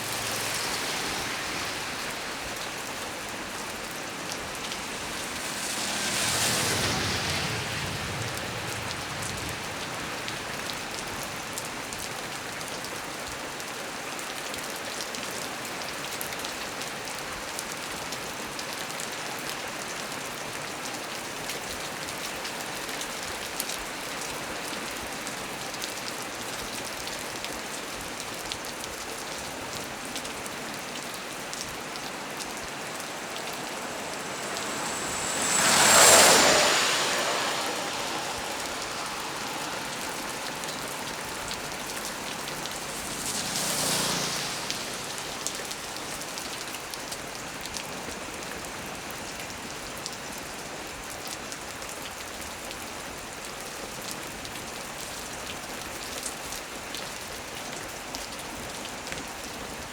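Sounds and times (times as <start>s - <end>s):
broad whooshing: 0.0s - 11.0s, 32.4s - 45.9s
heavy rain on leaves: 0.0s - 59.9s.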